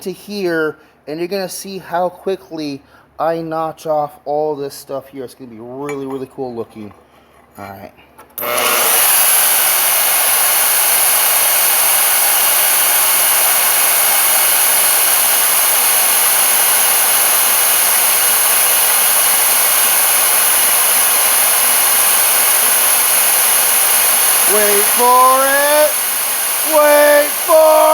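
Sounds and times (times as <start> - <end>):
bandsaw cutting metal: 8.4 - 27.9.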